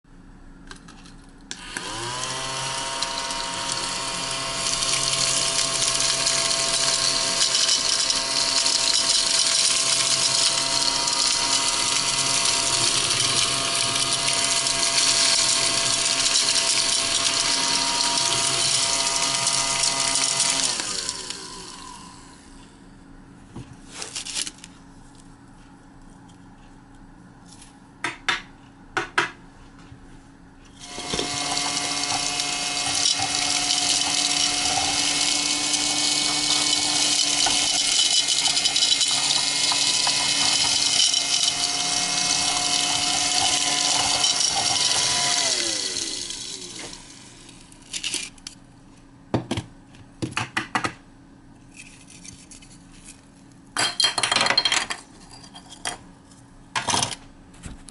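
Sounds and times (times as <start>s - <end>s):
mini vacuum motor whine: 1.5s - 22.7s, 30.7s - 48.3s.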